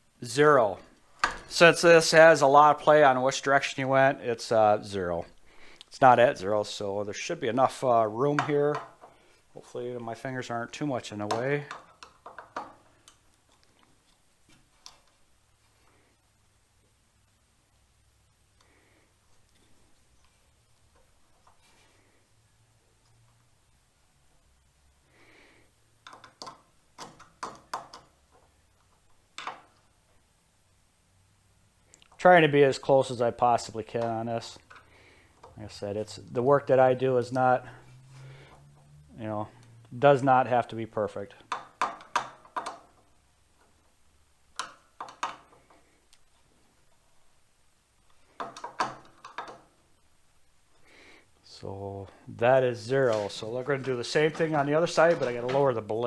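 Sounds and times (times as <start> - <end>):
metal parts clicking and knocking: 11.3 - 13.7, 26.0 - 29.8, 41.4 - 43.1, 44.5 - 45.8, 48.1 - 49.8
soft brushing: 52.7 - 56.0.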